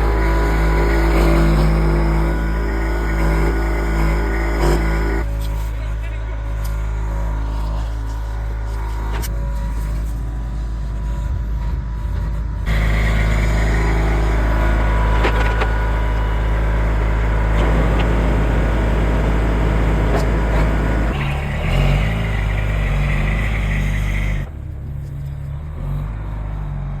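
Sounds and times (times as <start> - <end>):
high hydraulic whine: 0.0 - 26.3
machine engine running under load: 0.0 - 27.0.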